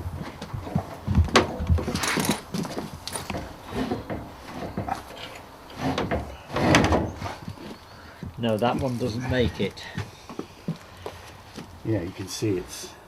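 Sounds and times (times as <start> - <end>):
heavy metal unit knocking and scraping: 0.0 - 7.6.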